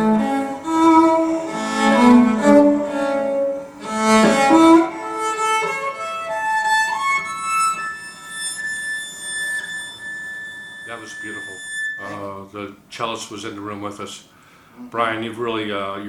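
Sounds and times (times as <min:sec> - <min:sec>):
bowed cello notes over loudspeakers: 0:00.0 - 0:12.4.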